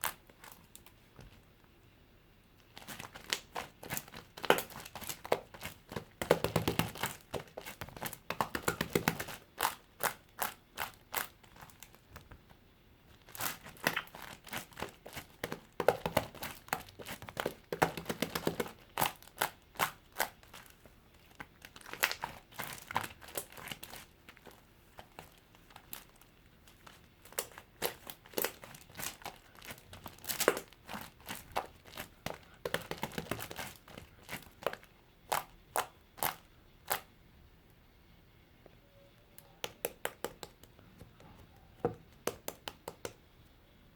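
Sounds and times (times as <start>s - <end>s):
slime crackling and popping: 2.6s - 12.4s, 13.1s - 37.1s.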